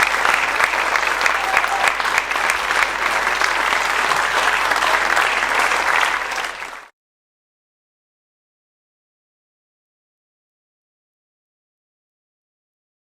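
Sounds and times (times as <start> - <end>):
audience applauding: 0.0 - 6.9.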